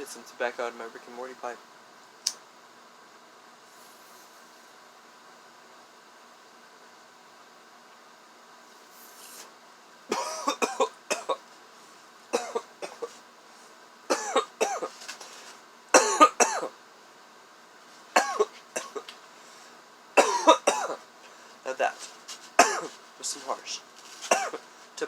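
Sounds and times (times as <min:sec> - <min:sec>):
man coughing: 0:10.1 - 0:11.4, 0:12.4 - 0:13.2, 0:14.1 - 0:14.9, 0:16.0 - 0:16.8, 0:18.2 - 0:19.1, 0:20.2 - 0:21.0, 0:22.6 - 0:23.0, 0:24.3 - 0:24.6.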